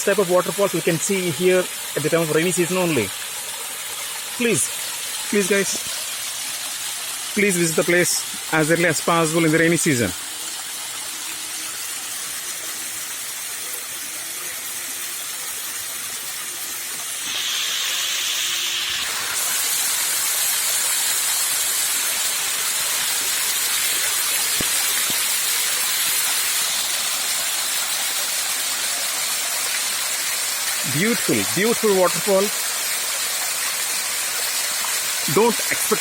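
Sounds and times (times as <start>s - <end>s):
waterfall rushing: 4.4s - 5.9s, 34.2s - 36.0s.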